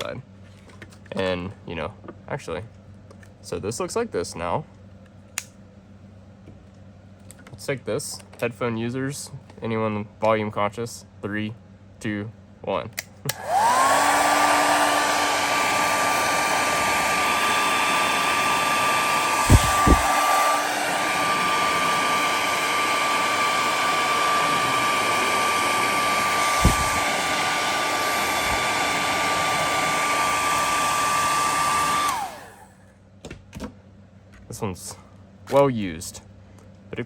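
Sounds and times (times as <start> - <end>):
hair dryer running: 13.3 - 32.8.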